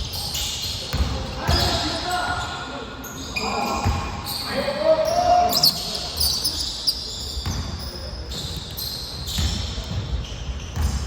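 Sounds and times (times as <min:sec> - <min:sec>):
shoe squeaks: 0:00.0 - 0:11.0
basketball bouncing on gym floor: 0:00.8 - 0:01.8, 0:07.4 - 0:11.0.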